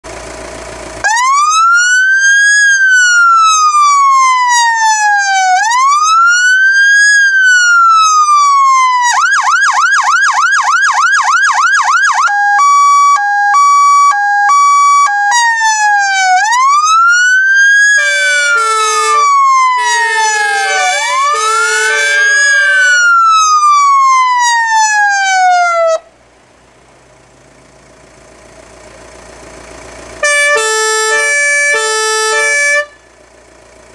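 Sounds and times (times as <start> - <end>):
ambulance siren: 1.0 - 26.1, 30.2 - 33.0
two-tone air horns: 17.8 - 23.2, 30.2 - 33.0.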